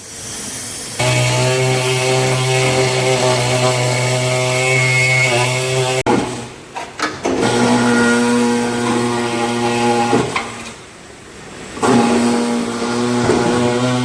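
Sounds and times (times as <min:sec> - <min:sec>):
power tool motor running: 0:01.0 - 0:06.1, 0:11.8 - 0:14.0
knocks: 0:13.2 - 0:14.0.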